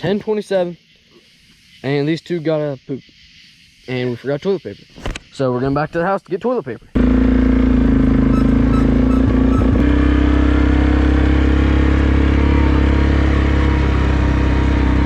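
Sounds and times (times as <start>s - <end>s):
quad engine running: 7.0s - 15.0s.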